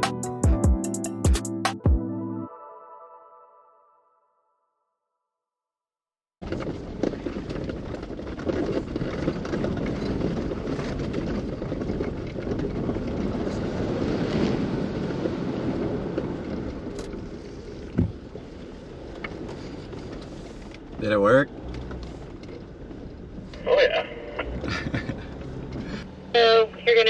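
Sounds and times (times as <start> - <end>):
wind buffeting microphone: 6.4 - 21.0
off-road vehicle on dirt trail: 6.4 - 27.0.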